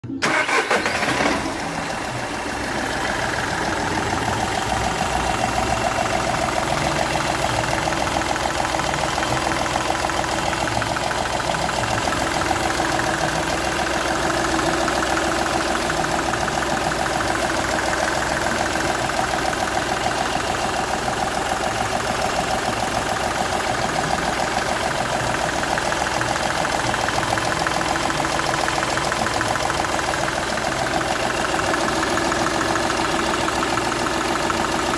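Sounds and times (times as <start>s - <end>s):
diesel engine idling with knocking: 0.2s - 34.9s.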